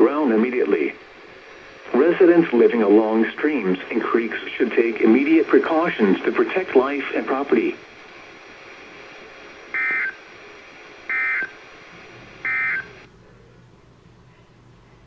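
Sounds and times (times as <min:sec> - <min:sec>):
steady background hiss: 0:00.0 - 0:15.0
digital data tone bursts: 0:09.7 - 0:10.2, 0:11.1 - 0:11.6, 0:12.4 - 0:13.1.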